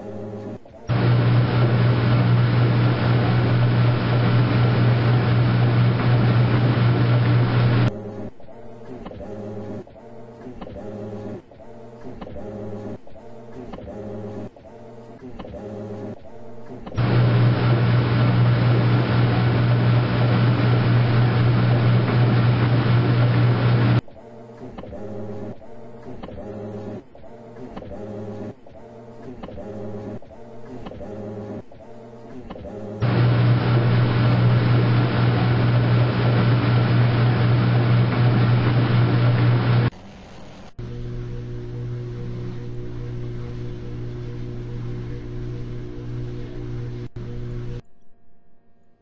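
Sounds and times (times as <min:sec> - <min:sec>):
washing machine running: 0:00.9 - 0:07.9, 0:17.0 - 0:24.0, 0:33.0 - 0:47.8.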